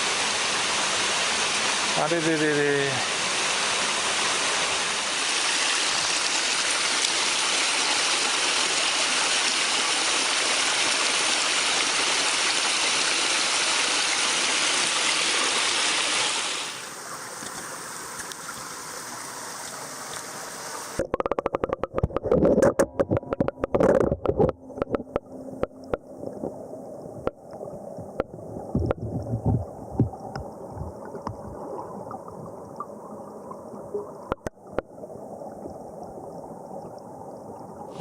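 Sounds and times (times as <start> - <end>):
stream rushing over rocks: 0.0 - 21.0.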